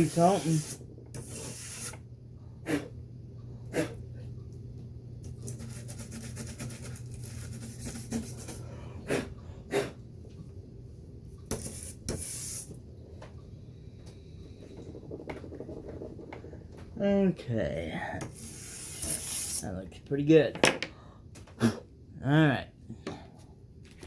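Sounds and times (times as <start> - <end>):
toothbrush scrubbing: 0.0 - 2.0, 5.4 - 8.6, 18.3 - 19.6.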